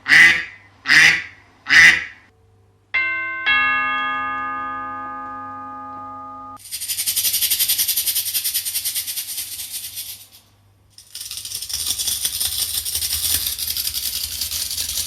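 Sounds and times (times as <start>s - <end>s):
doorbell chime ringing: 3.0s - 6.6s
maraca-like rattle shaken: 6.6s - 15.0s.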